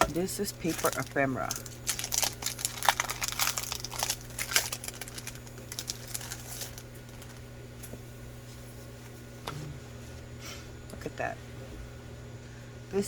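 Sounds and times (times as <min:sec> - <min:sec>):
packaging crinkling and rustling: 0:00.0 - 0:07.5.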